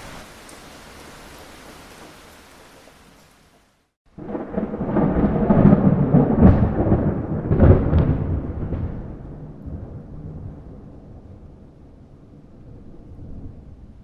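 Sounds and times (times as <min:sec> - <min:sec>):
light rain: 0:00.0 - 0:14.0
rolling thunder: 0:04.2 - 0:14.0.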